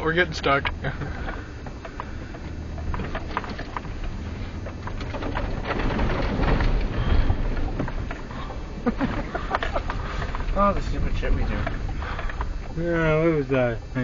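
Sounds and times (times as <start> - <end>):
car engine labouring: 0.0 - 14.0
mud spattering against car body: 2.8 - 12.8.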